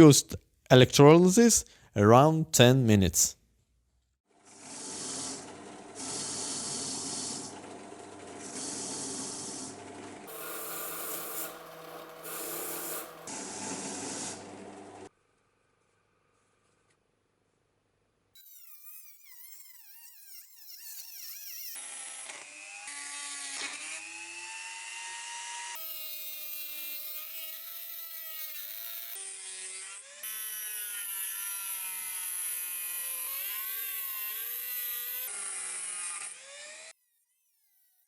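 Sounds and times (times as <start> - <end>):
small electric power tool whining: 4.4 - 15.1, 18.4 - 38.0.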